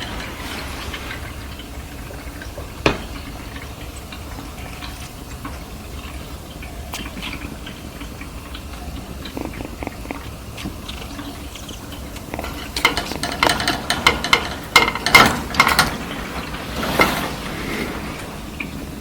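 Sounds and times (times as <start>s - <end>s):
small ticks and rustles: 3.5s - 15.2s
kitten purring: 9.2s - 10.4s.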